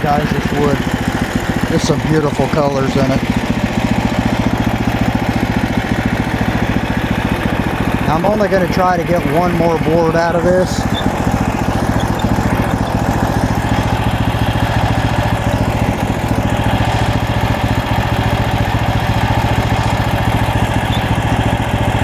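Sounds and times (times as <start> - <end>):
gasoline engine running: 0.0 - 22.0.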